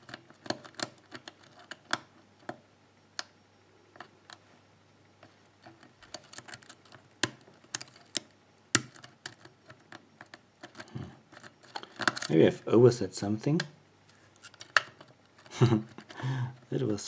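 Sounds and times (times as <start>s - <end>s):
lock pick clicking against pins: 0.0s - 2.6s, 5.6s - 12.4s.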